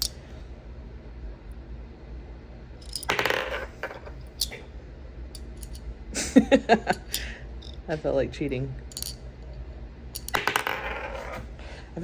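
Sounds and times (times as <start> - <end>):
magnetic balls clicking on metal: 10.1 - 10.6.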